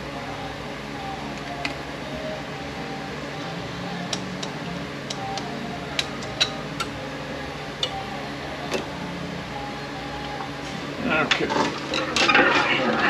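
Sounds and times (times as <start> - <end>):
low shop hum: 0.0 - 13.0.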